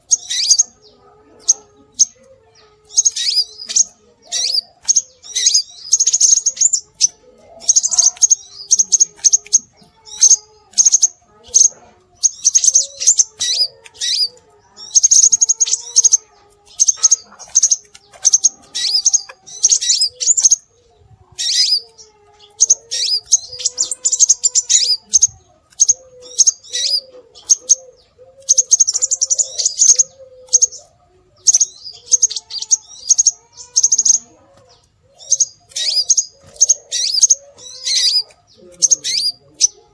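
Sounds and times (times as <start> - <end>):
high rapid bird chirps: 0.0 - 2.2, 2.8 - 20.7.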